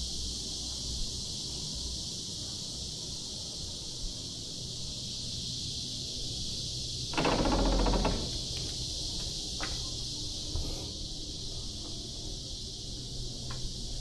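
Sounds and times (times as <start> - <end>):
cicadas droning: 0.0 - 14.0
rustling noise: 10.3 - 11.0.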